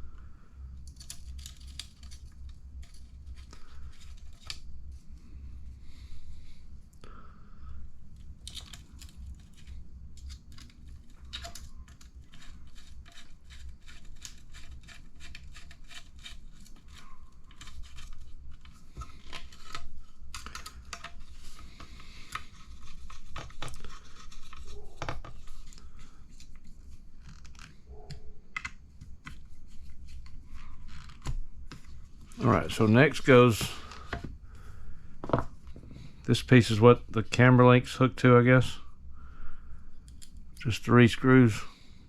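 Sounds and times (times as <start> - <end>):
steady low hum: 0.0 - 42.0
small metal parts clicking: 0.8 - 4.6, 8.3 - 21.3.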